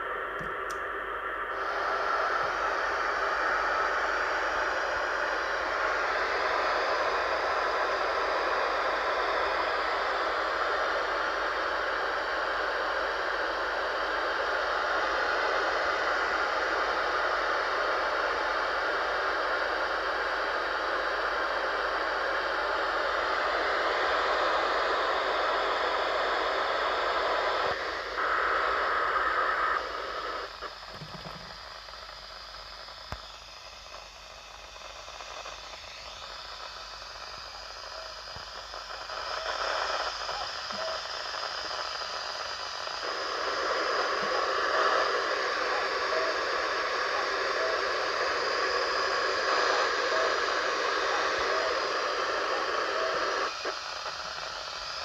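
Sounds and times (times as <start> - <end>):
radio hiss and static: 0.0 - 55.0.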